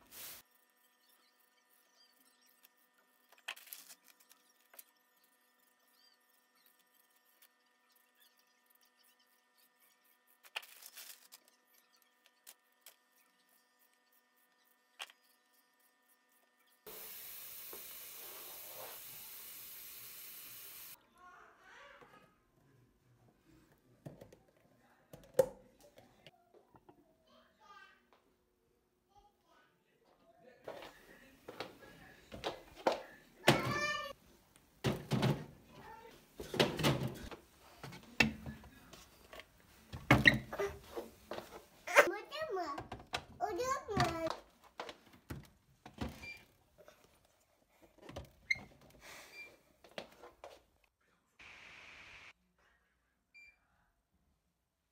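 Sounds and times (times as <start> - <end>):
water running from kitchen tap: 16.9 - 21.0.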